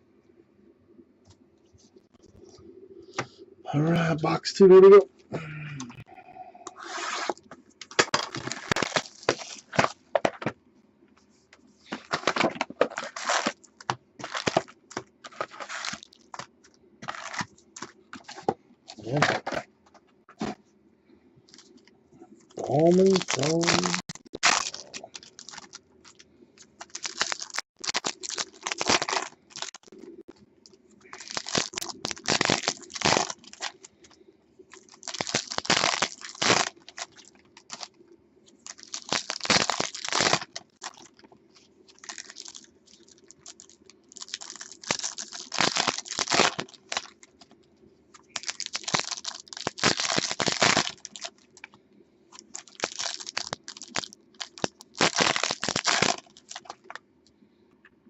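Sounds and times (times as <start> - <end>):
card pack wrappers tearing: 6.8 - 10.4, 11.8 - 19.6, 22.6 - 30.0, 31.1 - 33.9, 34.7 - 37.9, 38.7 - 41.2, 41.9 - 47.5, 48.2 - 51.7, 52.4 - 57.0.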